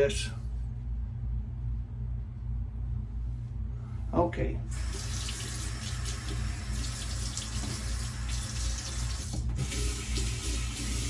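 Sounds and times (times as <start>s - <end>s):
tap running into a sink: 4.9s - 11.0s.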